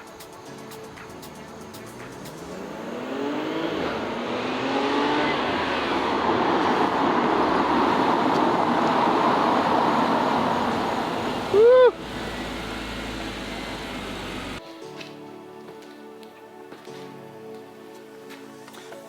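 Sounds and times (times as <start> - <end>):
road noise: 0.0 - 14.6
car engine accelerating: 1.3 - 14.6.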